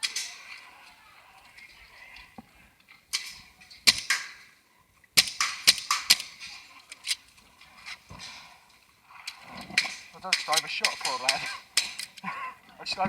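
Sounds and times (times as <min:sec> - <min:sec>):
paintball markers firing: 0:03.2 - 0:04.5, 0:05.2 - 0:06.6, 0:09.8 - 0:12.2.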